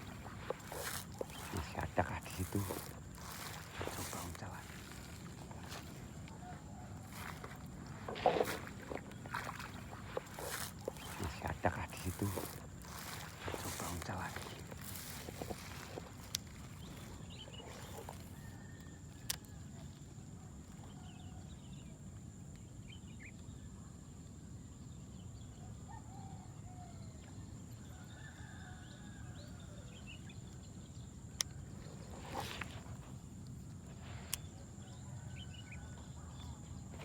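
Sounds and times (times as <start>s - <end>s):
high insect-like tone: 0.0s - 6.3s, 7.0s - 18.4s.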